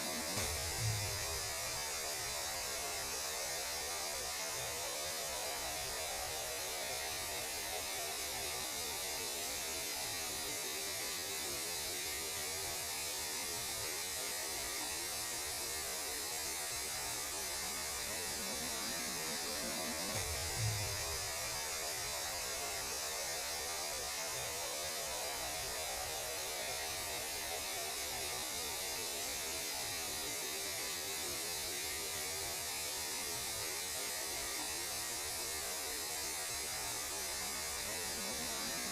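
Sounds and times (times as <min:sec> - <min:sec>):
radio static hiss: 0:00.0 - 0:32.7, 0:33.5 - 0:38.9
low hum: 0:00.2 - 0:01.8, 0:18.3 - 0:21.6.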